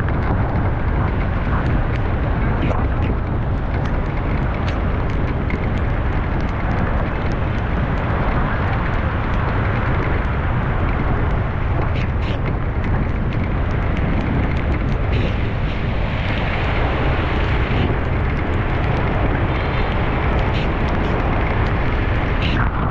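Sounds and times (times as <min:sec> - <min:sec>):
light clicks and ticks: 0:00.0 - 0:22.8
street traffic rumble: 0:00.0 - 0:22.9.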